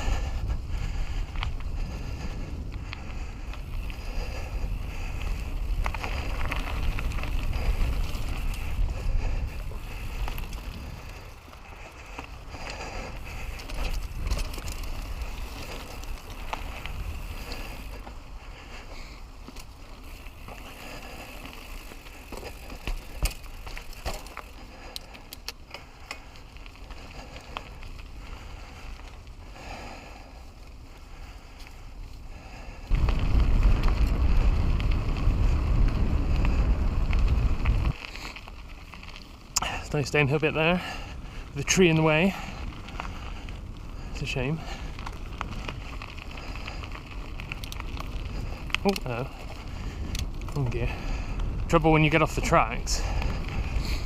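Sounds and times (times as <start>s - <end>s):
wind rumble on microphone: 0.0s - 19.2s, 26.3s - 54.0s
bike tyre rolling noise: 0.0s - 54.0s
clicks and rattles from stones: 13.4s - 18.1s, 19.5s - 27.7s.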